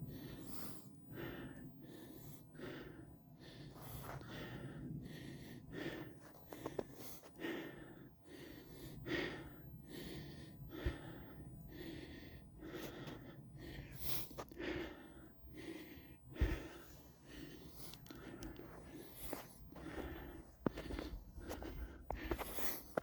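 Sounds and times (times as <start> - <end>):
person breathing: 0.0 - 23.0
footsteps crunching on snow: 18.6 - 23.0.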